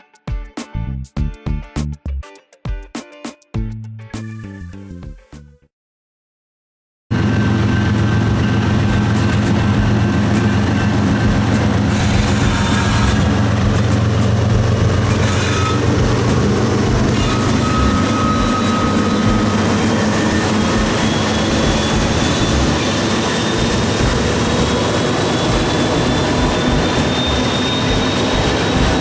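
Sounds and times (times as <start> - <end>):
diesel locomotive drone: 7.1 - 29.0
rail cars rumbling: 7.1 - 29.0
thin high whine: 7.2 - 29.0.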